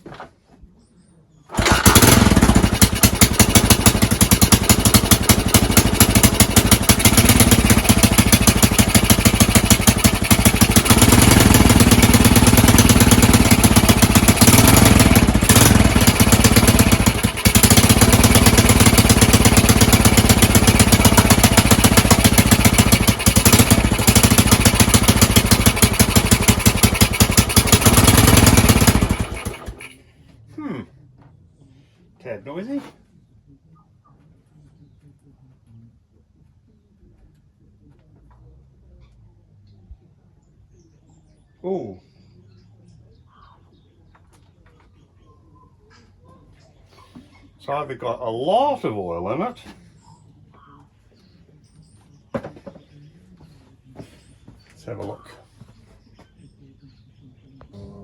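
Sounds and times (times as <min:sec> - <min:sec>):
motorcycle engine running: 0:01.5 - 0:30.0.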